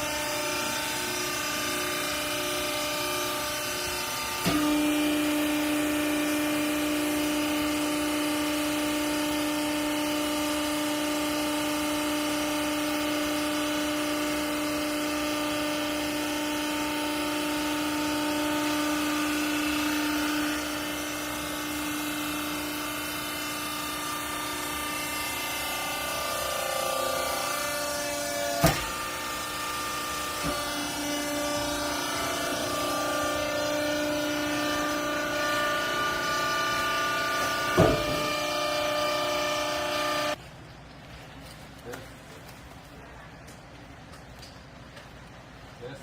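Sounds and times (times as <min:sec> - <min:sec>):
baler hydraulic pump whine: 0:00.0 - 0:40.4
machine noise: 0:00.0 - 0:40.4.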